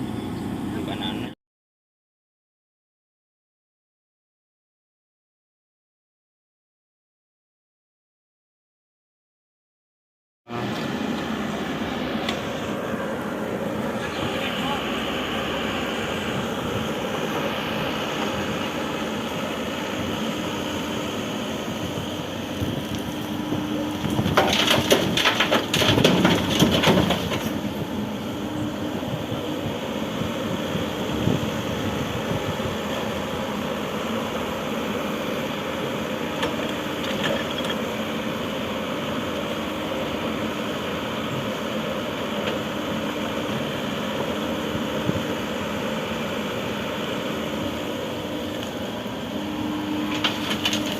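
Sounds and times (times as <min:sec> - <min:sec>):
excavator diesel engine running: 0:10.5 - 0:50.9.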